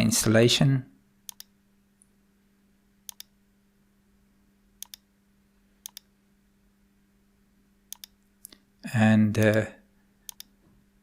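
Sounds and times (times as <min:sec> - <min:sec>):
faint electrical hum: 0:00.0 - 0:11.0
mouse button clicks: 0:03.1 - 0:03.3, 0:04.8 - 0:05.0, 0:05.8 - 0:06.1, 0:07.9 - 0:08.2, 0:10.3 - 0:10.5.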